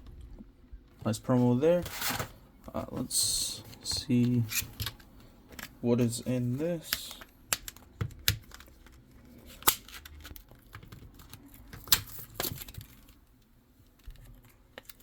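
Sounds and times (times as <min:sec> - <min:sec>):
packaging clicks and snaps: 0:06.9 - 0:13.1, 0:14.0 - 0:15.0.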